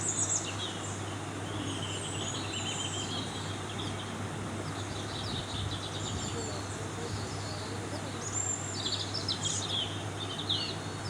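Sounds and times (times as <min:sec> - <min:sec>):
outdoor background noise: 0:00.0 - 0:11.0.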